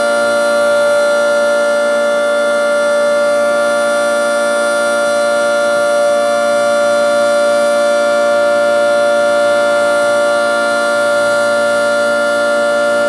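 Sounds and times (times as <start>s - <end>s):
tornado siren steady chord: 0.0s - 13.0s.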